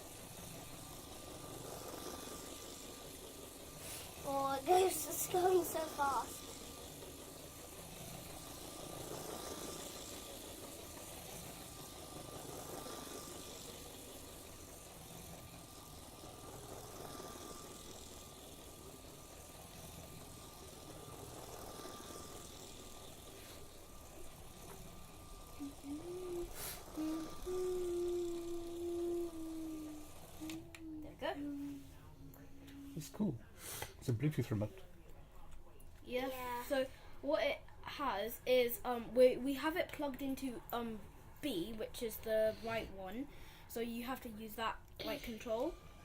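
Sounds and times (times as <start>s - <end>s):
wheels rattling on plastic track: 0.0s - 30.5s
toy train motor whirring: 0.0s - 32.0s, 36.1s - 46.0s.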